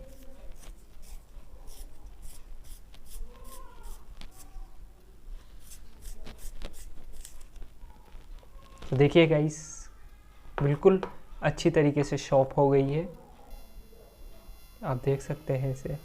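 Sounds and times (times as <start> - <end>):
pencil sharpener scraping: 0.0 - 4.5, 5.6 - 7.6.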